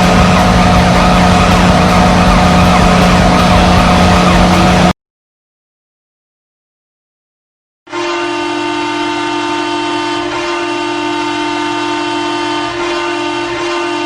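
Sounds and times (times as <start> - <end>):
goal horn blasting low note: 7.9 - 14.0.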